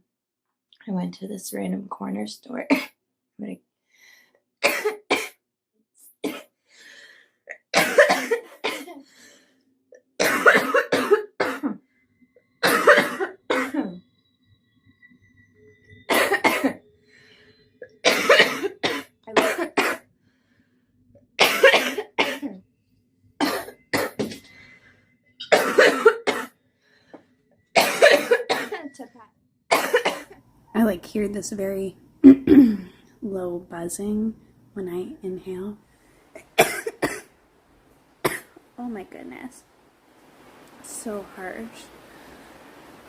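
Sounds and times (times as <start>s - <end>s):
woman coughing: 4.6s - 5.4s, 7.5s - 9.0s, 10.2s - 11.8s, 12.6s - 14.0s, 16.1s - 16.8s, 18.0s - 20.0s, 21.4s - 22.6s, 23.4s - 24.4s, 25.4s - 26.5s, 27.8s - 29.0s, 29.7s - 30.4s, 32.2s - 32.9s, 36.4s - 37.3s, 38.2s - 38.5s.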